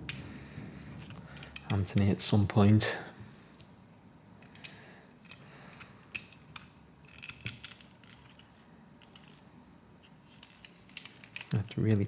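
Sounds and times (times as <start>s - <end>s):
plastic pieces clicking together: 0.8s - 2.1s, 4.4s - 9.4s, 10.3s - 12.0s.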